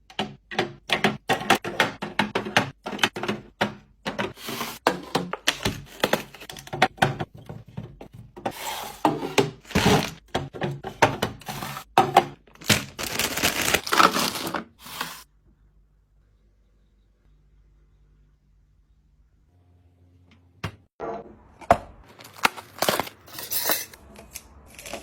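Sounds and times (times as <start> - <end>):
items knocking and clicking: 0.0 - 14.7.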